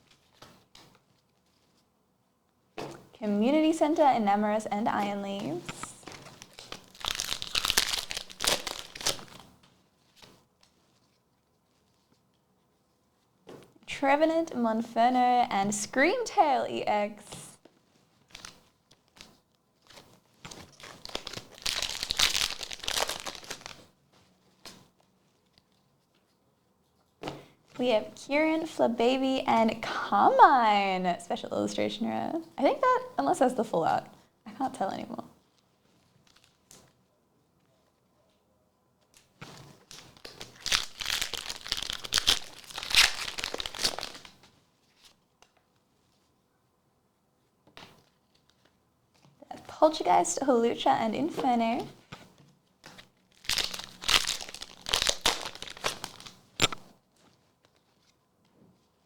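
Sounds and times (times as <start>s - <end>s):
foil wrapper crinkling: 5.8s - 9.5s, 19.8s - 23.9s, 39.8s - 44.6s, 53.0s - 56.9s.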